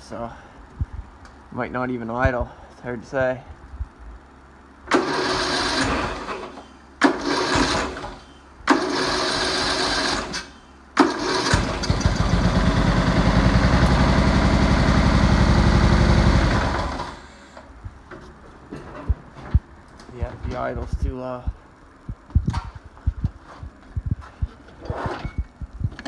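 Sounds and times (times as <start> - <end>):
mower engine running unevenly: 4.9 - 17.6
electric starter cranking engine: 4.9 - 17.7.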